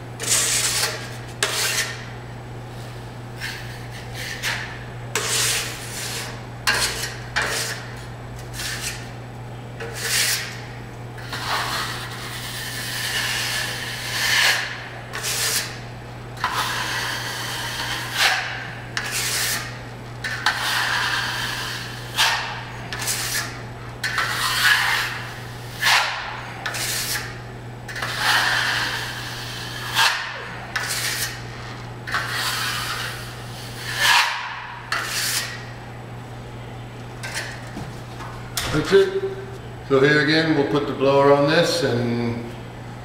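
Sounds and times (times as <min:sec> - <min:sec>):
drywall knife scraping: 0:00.2 - 0:02.1, 0:03.4 - 0:09.1, 0:09.8 - 0:10.6, 0:11.2 - 0:15.8, 0:16.4 - 0:31.5, 0:32.1 - 0:35.6.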